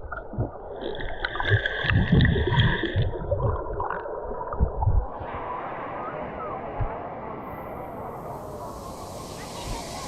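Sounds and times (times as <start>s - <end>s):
water sloshing and gurgling: 0.0s - 5.3s.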